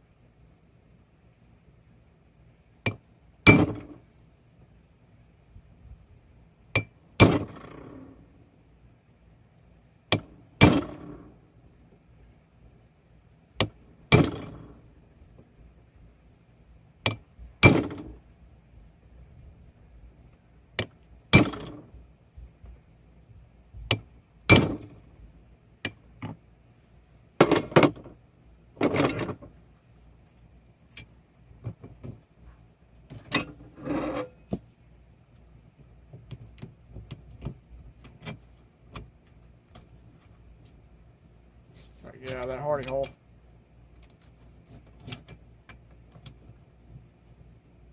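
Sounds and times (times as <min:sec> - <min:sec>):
faint metal clinks: 0:33.3 - 0:34.5.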